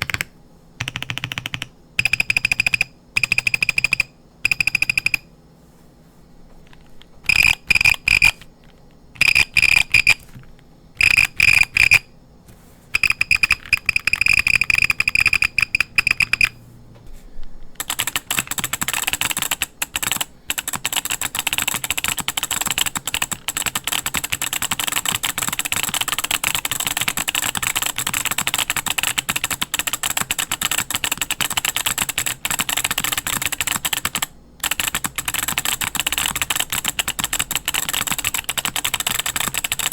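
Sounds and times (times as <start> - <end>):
mechanical keyboard typing: 0.0 - 5.3, 6.7 - 12.1, 13.0 - 16.6, 17.8 - 39.9
keyboard buzzer beeps: 2.0 - 5.3, 7.3 - 8.4, 9.2 - 10.2, 11.0 - 12.1, 13.0 - 16.6.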